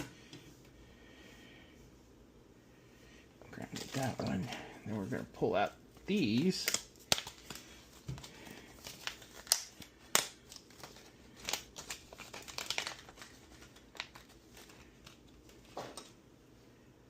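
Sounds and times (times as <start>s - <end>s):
crinkling rustle: 3.4s - 16.2s.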